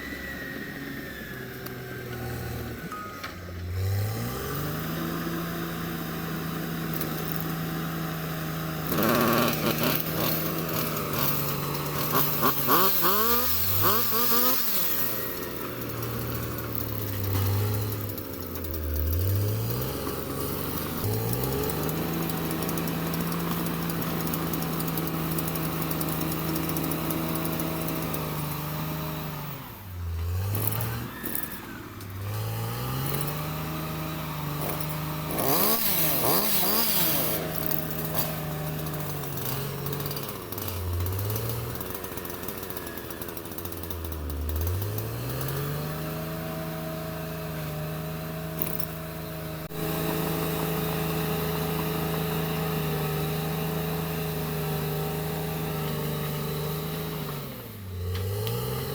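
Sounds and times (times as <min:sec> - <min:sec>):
bulldozer diesel engine revving: 0:00.0 - 0:58.9
harsh rattling noise: 0:08.9 - 0:28.1.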